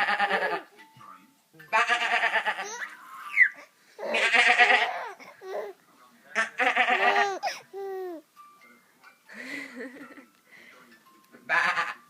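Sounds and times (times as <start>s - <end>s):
baby laughing and squealing: 0.0s - 0.7s, 2.5s - 5.8s, 6.4s - 8.2s
man imitating sheep bleats: 1.7s - 2.6s, 6.4s - 7.2s, 11.5s - 12.0s.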